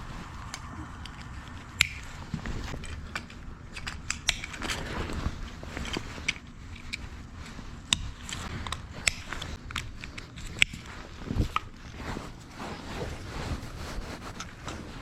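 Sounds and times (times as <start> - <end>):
low rumble: 0.0 - 3.7.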